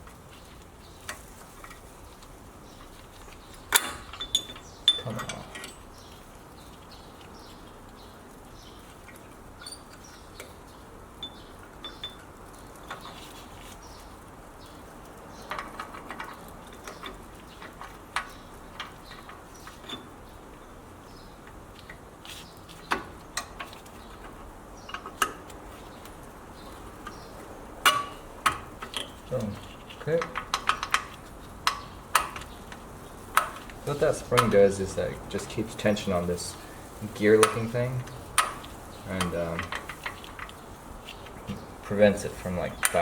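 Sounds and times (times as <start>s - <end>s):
light metallic clicks: 27.0s - 36.3s, 37.1s - 43.0s.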